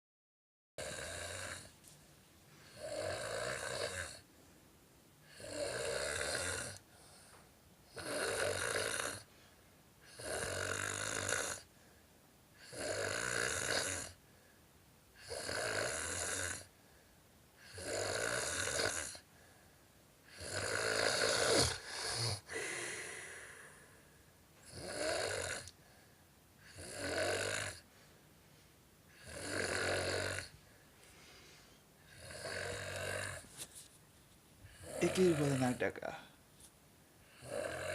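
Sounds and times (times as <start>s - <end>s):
person snoring: 0.8s - 1.7s, 2.7s - 4.2s, 5.3s - 7.2s, 7.9s - 9.3s, 10.1s - 11.7s, 12.6s - 14.2s, 15.2s - 16.7s, 17.6s - 19.2s, 20.3s - 25.7s, 26.6s - 27.9s, 29.1s - 30.6s, 32.1s - 33.4s, 34.7s - 36.3s, 37.3s - 37.9s.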